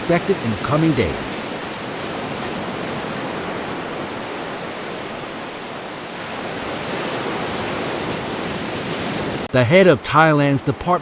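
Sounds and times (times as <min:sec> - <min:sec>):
rushing water: 0:00.0 - 0:09.5.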